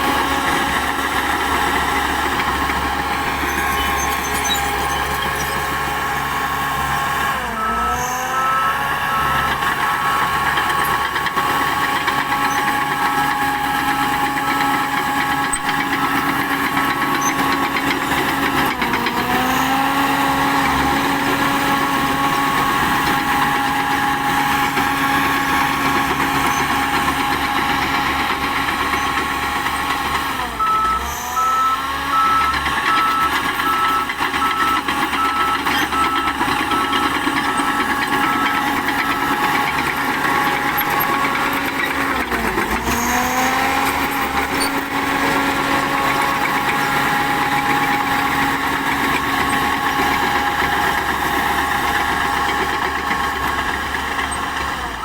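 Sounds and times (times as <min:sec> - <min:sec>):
bulldozer diesel engine running: 0:00.0 - 0:55.0
reversing alarm beeping: 0:02.2 - 0:10.9, 0:25.3 - 0:41.5.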